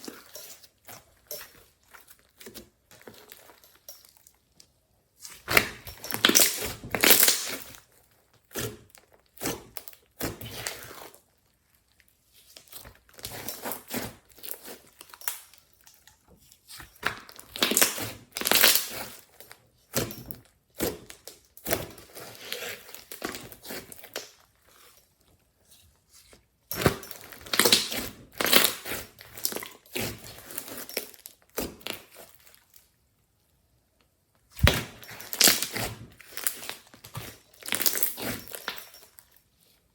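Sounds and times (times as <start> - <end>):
slime crackling and popping: 5.4 - 7.8.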